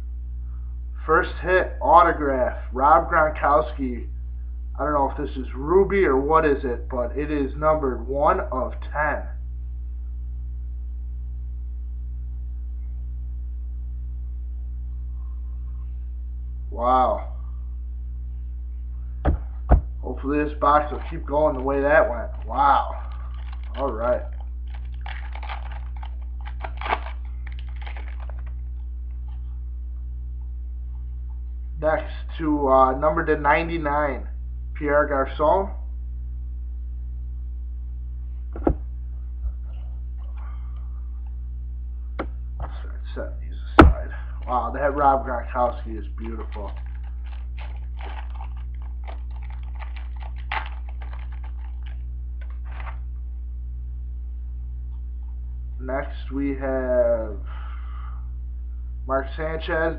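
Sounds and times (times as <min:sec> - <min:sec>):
steady electrical hum: 0:00.0 - 0:59.9
trading cards clicking and rustling: 0:20.9 - 0:28.6, 0:46.2 - 0:53.0.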